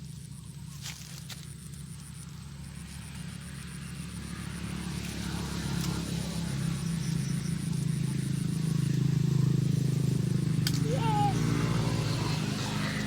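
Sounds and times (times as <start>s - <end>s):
motor engine droning: 8.6s - 13.0s.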